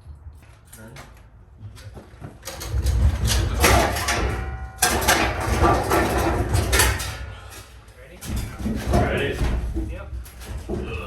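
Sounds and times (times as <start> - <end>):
tool box casters rumbling: 1.8 - 11.0
steel cabinet rattling and scraping: 2.3 - 11.0.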